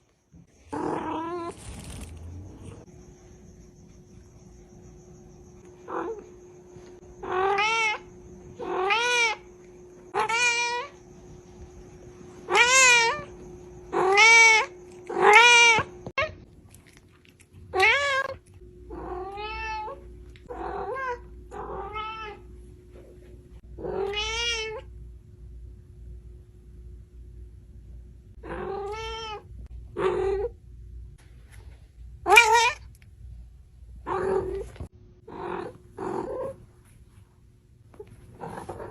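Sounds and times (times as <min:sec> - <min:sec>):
cat meowing: 0:10.2 - 0:10.9, 0:12.5 - 0:13.3, 0:14.0 - 0:15.9, 0:23.8 - 0:24.9, 0:28.5 - 0:29.4.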